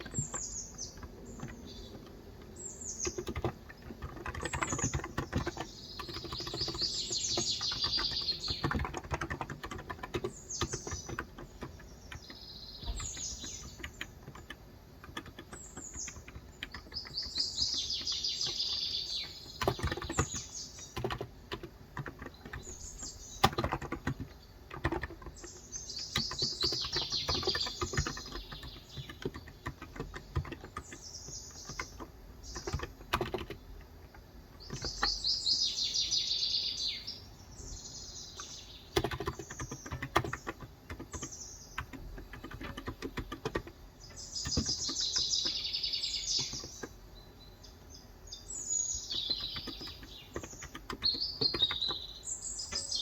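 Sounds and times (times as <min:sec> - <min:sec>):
bird chirps: 0:00.0 - 0:21.3, 0:22.0 - 0:33.7, 0:34.6 - 0:53.0
keyboard typing: 0:00.0 - 0:35.3, 0:38.3 - 0:47.0, 0:49.0 - 0:53.0
bird singing trilled phrase: 0:48.3 - 0:53.0.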